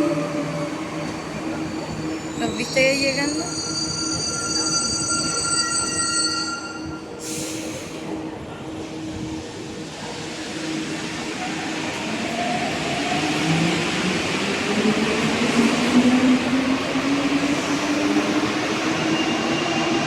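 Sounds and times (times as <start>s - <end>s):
high-pitched train squeal: 0.0s - 7.9s, 18.9s - 20.0s.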